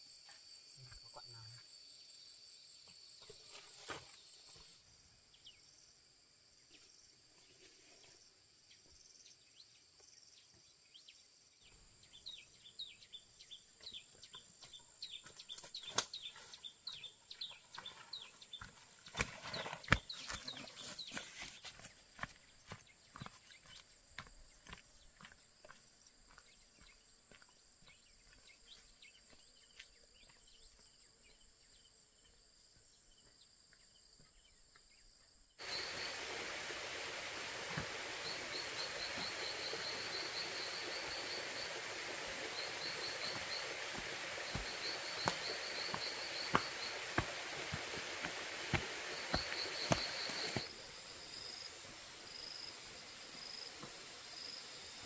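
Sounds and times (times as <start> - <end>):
insects chirping in rapid trills: 35.6 - 55.0
steady hiss: 35.6 - 55.0.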